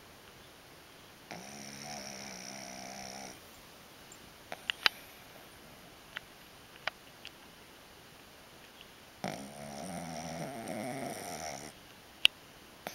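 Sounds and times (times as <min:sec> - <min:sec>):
dog snoring: 0:01.3 - 0:03.4, 0:09.2 - 0:11.8
faint clicks: 0:04.1 - 0:05.0.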